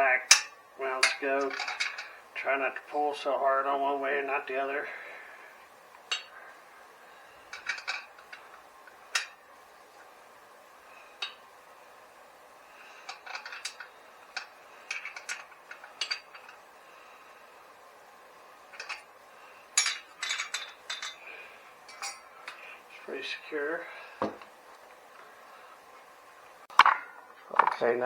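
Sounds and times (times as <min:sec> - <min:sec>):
hand tools clinking on metal: 0:00.3 - 0:02.2, 0:06.0 - 0:06.4, 0:07.5 - 0:09.4, 0:12.9 - 0:16.6, 0:18.8 - 0:19.1, 0:19.8 - 0:22.7.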